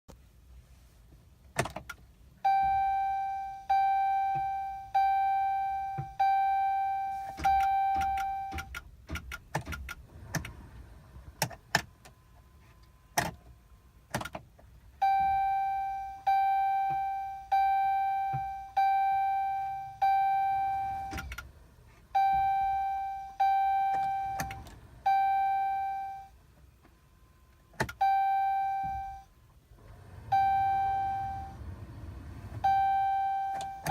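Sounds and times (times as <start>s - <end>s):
dashboard warning chime dinging: 2.4s - 9.8s, 15.0s - 21.5s, 22.2s - 26.4s, 27.0s - 29.3s, 30.2s - 31.6s, 32.5s - 33.9s.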